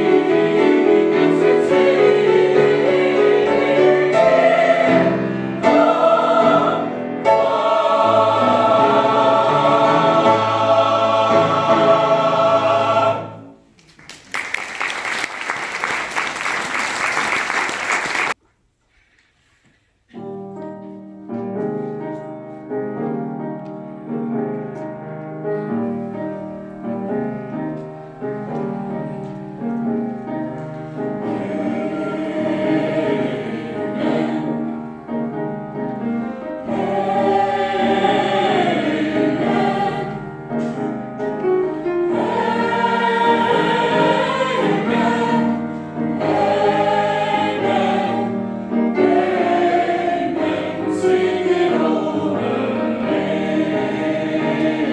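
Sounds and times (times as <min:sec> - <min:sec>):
choir singing in parts: 0:00.0 - 0:13.7, 0:30.4 - 0:54.9.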